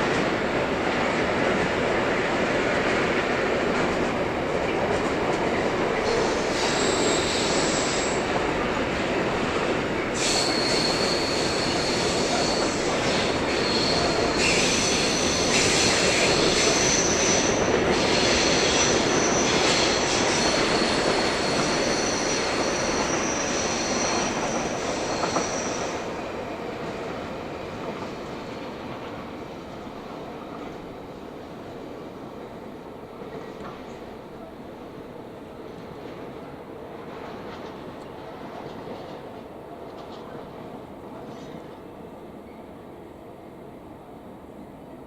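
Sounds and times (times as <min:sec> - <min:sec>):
train rolling noise: 0:00.0 - 0:45.0
high wheel squeal: 0:06.0 - 0:08.2, 0:10.2 - 0:26.1.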